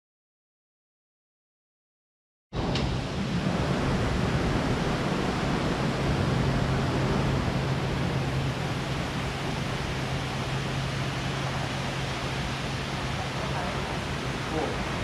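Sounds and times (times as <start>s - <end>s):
low hum: 2.6s - 15.0s
waterfall roaring: 2.6s - 15.0s.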